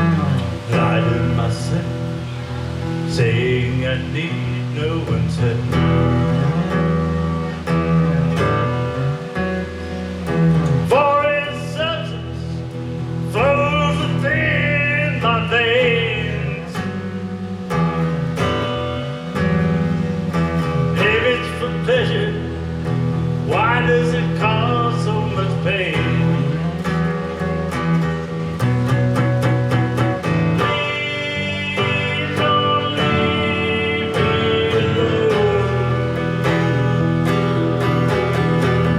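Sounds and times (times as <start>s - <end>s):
person singing: 0.0s - 6.8s, 10.7s - 12.7s, 13.3s - 17.0s, 20.7s - 26.8s, 30.2s - 38.9s
acoustic guitar strumming: 0.0s - 38.9s.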